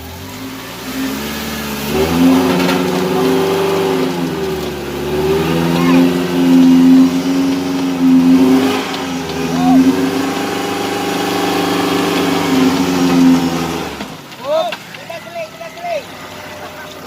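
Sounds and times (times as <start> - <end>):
off-road vehicle engine running hard: 0.0 - 17.0.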